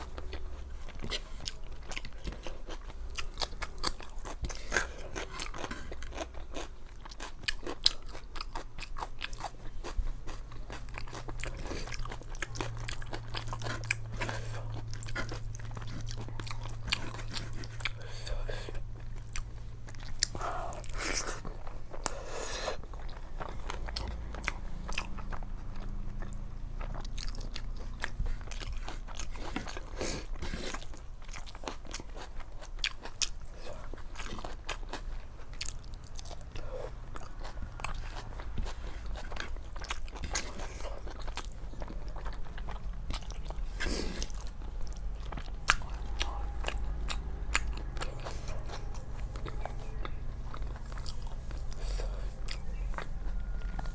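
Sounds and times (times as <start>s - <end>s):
close-up chewing and mouth sounds: 0.0s - 53.9s
steady low hum: 0.0s - 53.9s.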